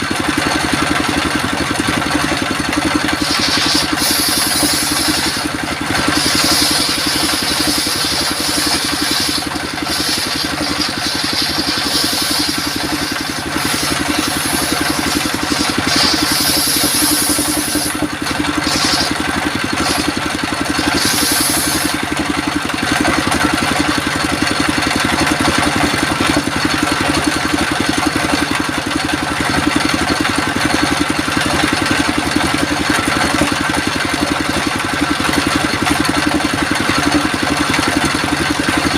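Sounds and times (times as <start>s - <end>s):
sawmill drone: 0.0s - 38.9s
saw blade hissing through wood: 2.8s - 22.3s.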